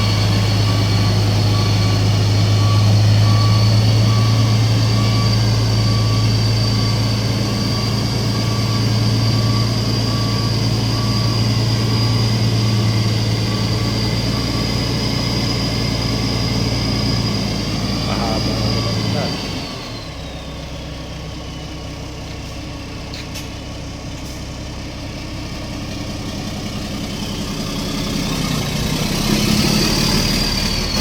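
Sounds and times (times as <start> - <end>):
short beep: 0.0 - 20.0
steady high whine: 0.0 - 20.5
diesel truck engine idling: 0.0 - 31.0.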